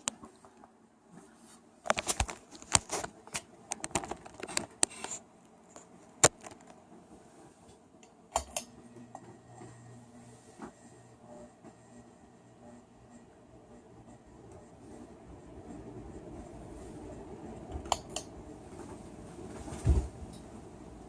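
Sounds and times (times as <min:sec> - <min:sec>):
ceiling fan motor humming: 0:00.0 - 0:21.0
sharp clicks and rattles: 0:01.9 - 0:06.8.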